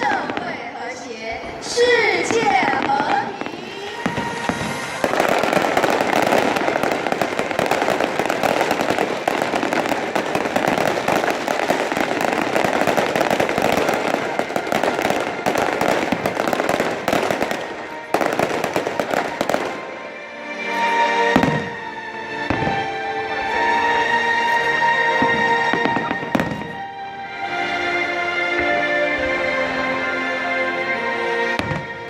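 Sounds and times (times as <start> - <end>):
fireworks crackling and popping: 0.0 - 0.7, 1.6 - 20.0, 25.2 - 26.9
music: 0.0 - 32.0.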